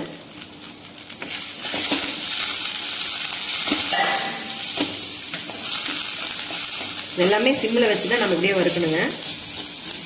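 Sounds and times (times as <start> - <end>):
spices sizzling in oil: 0.0 - 10.0
spatula scraping a pan: 7.8 - 10.0.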